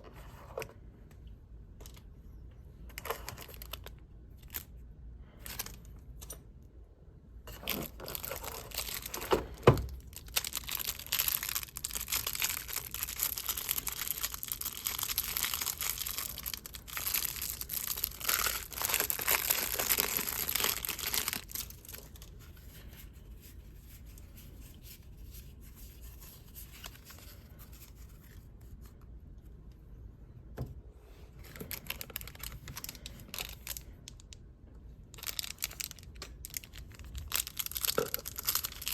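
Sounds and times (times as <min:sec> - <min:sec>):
plastic packaging tearing and crinkling: 0:07.5 - 0:22.4, 0:31.5 - 0:34.2, 0:35.1 - 0:38.9.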